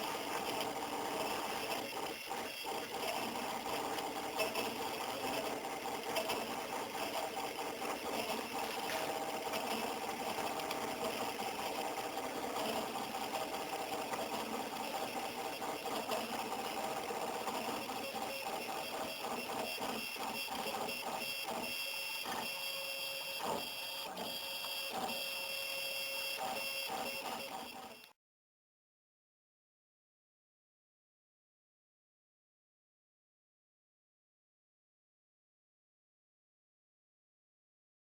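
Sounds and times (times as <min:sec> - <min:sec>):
stepper motors whining: 0:17.5 - 0:28.1.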